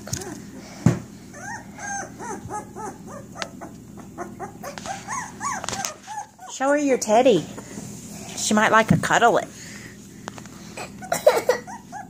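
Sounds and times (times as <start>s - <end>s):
puppy whimpering: 0.0s - 0.6s, 1.3s - 6.8s, 10.8s - 12.0s.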